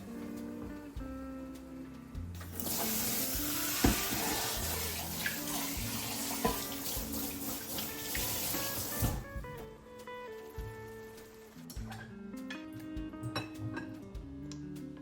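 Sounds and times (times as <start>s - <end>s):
tap water running into sink: 2.4s - 9.3s
knocks against sink: 3.8s - 4.3s.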